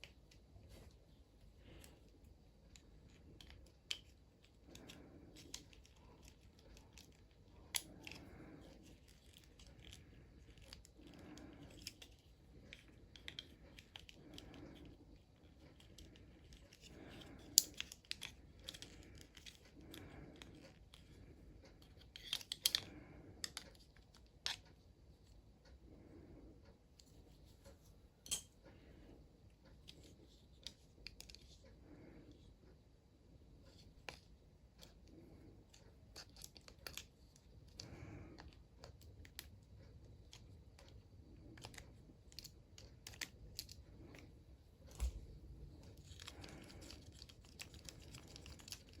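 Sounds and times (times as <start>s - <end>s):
small hand tools clicking and scraping: 2.7s - 24.7s, 33.7s - 49.0s.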